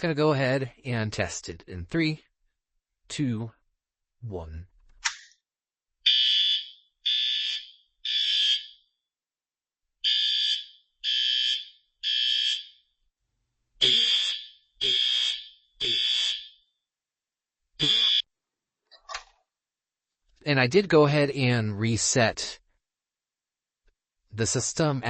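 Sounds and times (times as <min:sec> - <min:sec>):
fire alarm high-pitched pulses: 0:06.0 - 0:08.9, 0:10.0 - 0:12.9, 0:13.8 - 0:16.8, 0:17.8 - 0:18.3.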